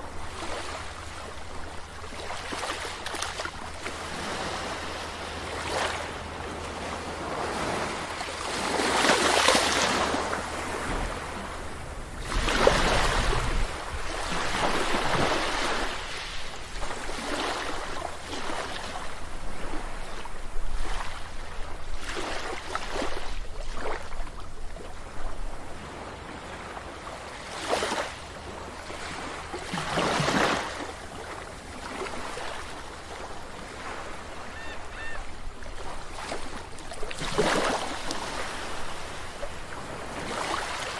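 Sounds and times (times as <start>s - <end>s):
sea waves breaking on beach: 0.0s - 40.9s
faint gull cry: 34.3s - 35.4s.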